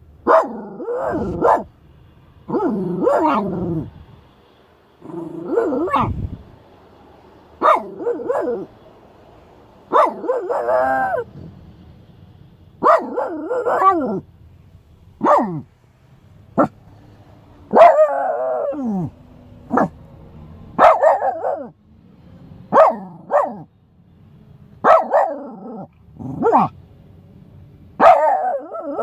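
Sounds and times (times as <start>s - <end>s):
dog barking: 0.2s - 1.7s, 2.5s - 3.9s, 5.0s - 6.3s, 7.6s - 8.8s, 9.9s - 11.5s, 12.8s - 14.2s, 15.2s - 15.7s, 16.6s - 16.8s, 17.7s - 20.0s, 20.7s - 21.8s, 22.7s - 23.7s, 24.8s - 26.8s, 28.0s - 29.0s.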